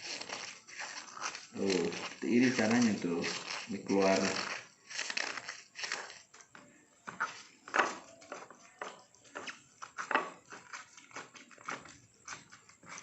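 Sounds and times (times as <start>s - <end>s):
hands crushing leaves in water: 0.0s - 6.3s.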